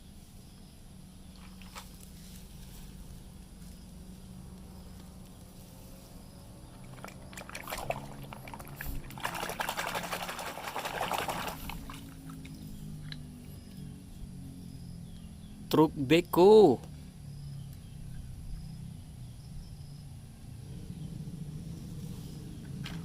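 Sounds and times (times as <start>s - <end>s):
faint low hum: 0.0s - 23.0s
water pouring and splashing: 6.8s - 12.5s.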